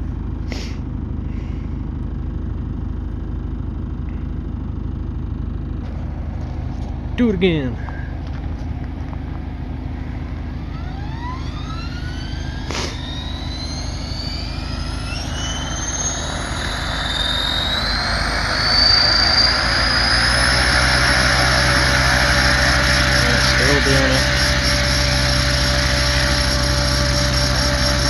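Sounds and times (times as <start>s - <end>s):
rc helicopter motor whine: 7.8s - 28.0s.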